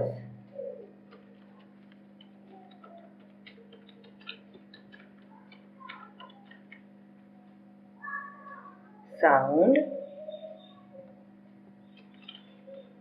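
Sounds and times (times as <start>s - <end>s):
low electrical hum: 0.0s - 13.0s
light clicks and taps: 0.4s - 7.7s, 11.0s - 13.0s.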